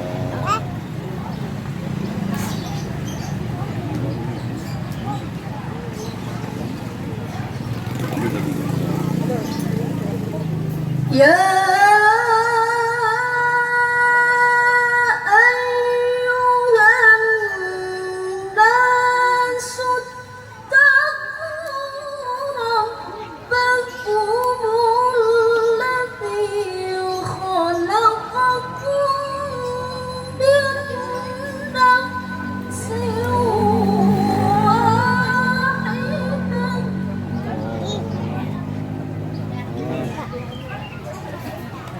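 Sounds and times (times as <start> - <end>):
woman reciting in melodic chant: 10.4 - 40.8.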